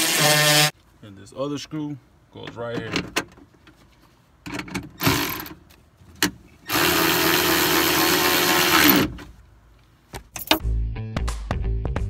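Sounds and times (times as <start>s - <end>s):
power drill driving screw: 0.0s - 0.7s, 6.6s - 9.3s.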